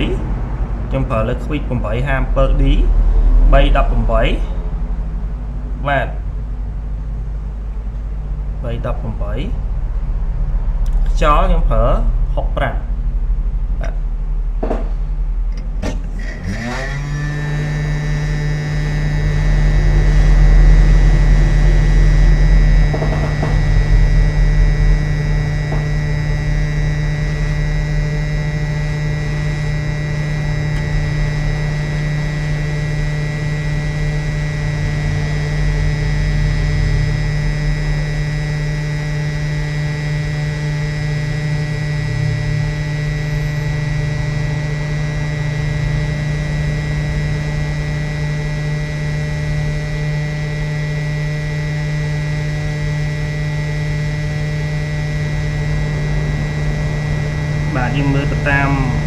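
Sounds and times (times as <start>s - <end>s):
hot air blower humming: 15.6s - 59.0s.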